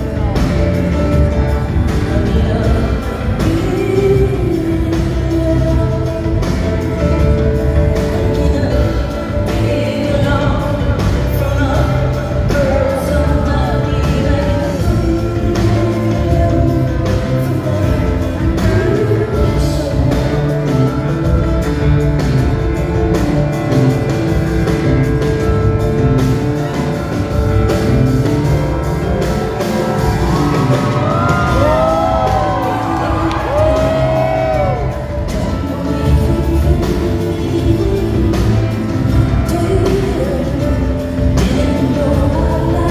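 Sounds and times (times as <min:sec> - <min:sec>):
heavy bass and drum hits: 0:00.0 - 0:42.9
rock band playing: 0:00.0 - 0:42.9
woman singing: 0:00.0 - 0:42.9
audience whooping: 0:29.8 - 0:36.0.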